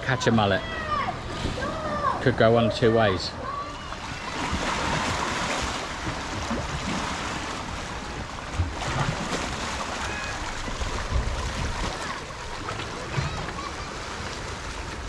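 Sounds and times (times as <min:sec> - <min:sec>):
wind buffeting microphone: 0:00.0 - 0:09.2
sea washing: 0:00.0 - 0:15.0.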